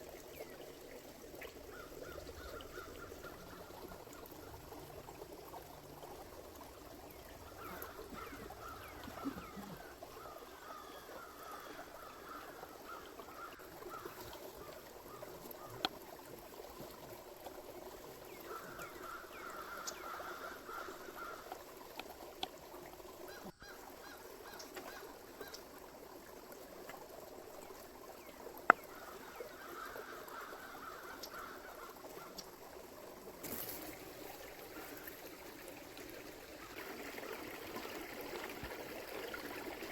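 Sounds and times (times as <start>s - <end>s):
river flowing: 0.0s - 39.9s
birds calling: 7.1s - 14.2s.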